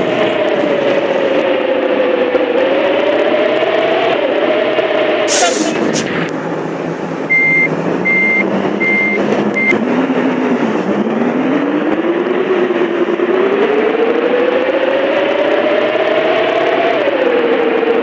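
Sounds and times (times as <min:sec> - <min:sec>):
diesel engine running: 0:00.0 - 0:18.0
vehicle beeper beeps: 0:07.3 - 0:09.8.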